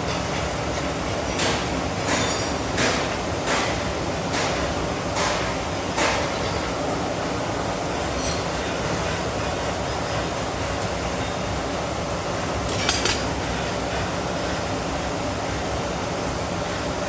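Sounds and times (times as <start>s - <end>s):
metallic clinks: 12.7s - 13.4s.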